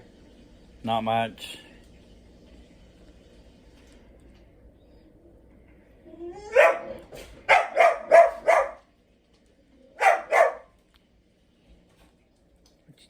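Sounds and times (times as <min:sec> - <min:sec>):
dog barking and yelping: 0:06.2 - 0:08.9, 0:10.0 - 0:10.8.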